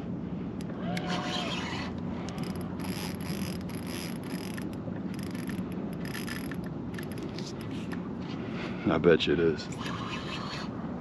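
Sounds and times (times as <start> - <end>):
fishing reel clicking and ratcheting: 2.3 - 7.7.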